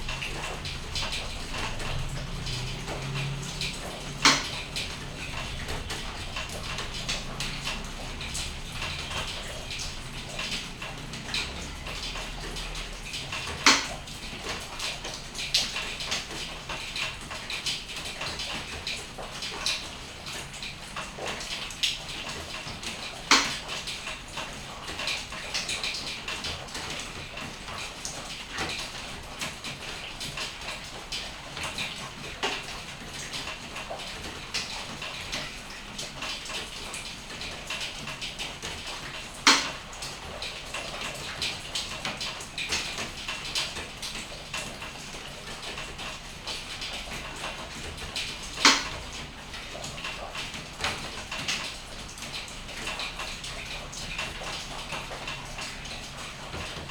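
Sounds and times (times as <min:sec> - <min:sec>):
rain falling: 0:00.0 - 0:56.9.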